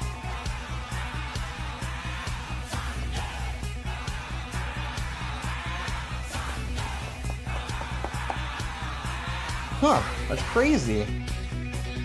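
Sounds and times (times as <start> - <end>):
pop music with heavy bass beat: 0.0 - 9.7.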